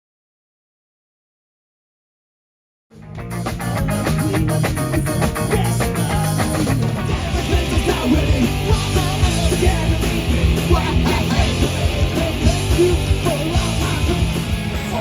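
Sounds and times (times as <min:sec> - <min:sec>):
live punk rock band: 0:03.0 - 0:15.0.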